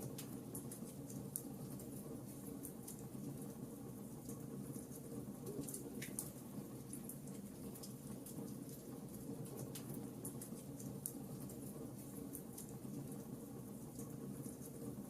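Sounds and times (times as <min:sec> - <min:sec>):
campfire crackling and popping: 0:05.0 - 0:06.4.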